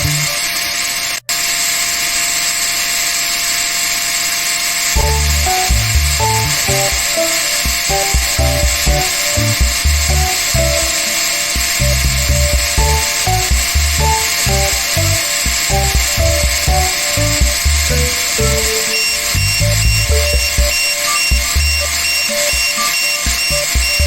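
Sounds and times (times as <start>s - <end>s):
pulsing bass line: 0.0s - 0.4s, 5.0s - 24.0s
short melody notes: 5.0s - 24.0s.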